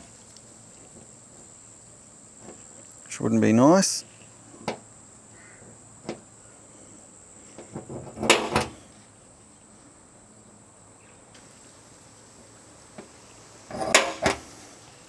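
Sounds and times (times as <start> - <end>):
metallic knocks: 8.2 - 8.8, 13.7 - 14.5.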